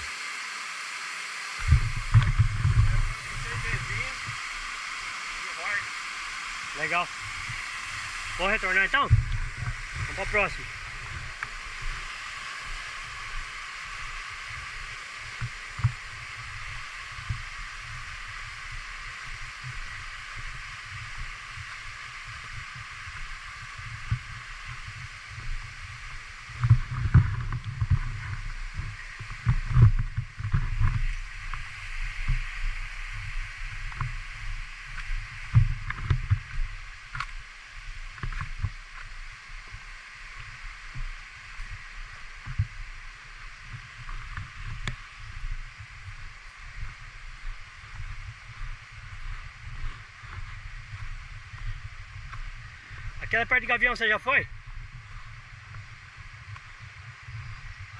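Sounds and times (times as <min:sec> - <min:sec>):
waterfall rushing: 0:00.0 - 0:22.3
wind buffeting microphone: 0:01.6 - 0:05.2, 0:06.2 - 0:53.7, 0:54.4 - 0:57.9.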